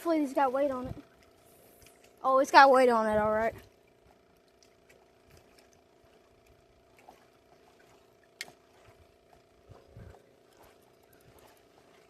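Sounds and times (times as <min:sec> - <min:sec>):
faint aerator hum: 0:00.0 - 0:12.0.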